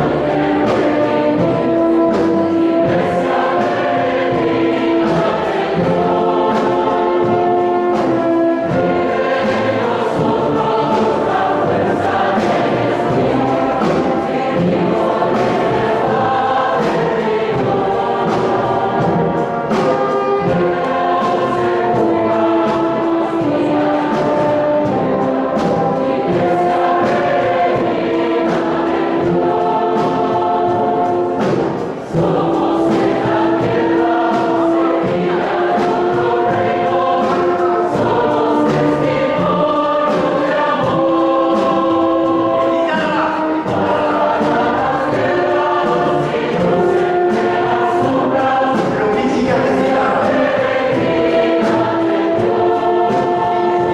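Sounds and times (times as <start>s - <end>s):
choir singing sustained notes: 0.0s - 53.9s.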